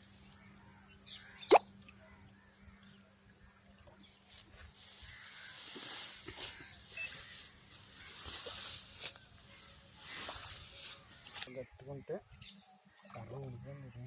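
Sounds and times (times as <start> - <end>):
soft hiss: 4.3 - 11.6.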